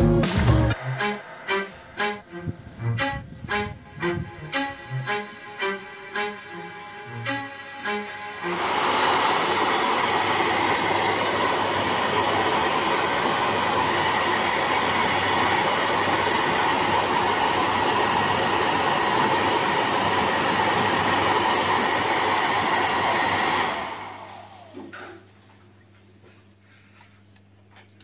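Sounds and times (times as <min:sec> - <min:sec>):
electric fan motor whirring: 0:00.7 - 0:24.9.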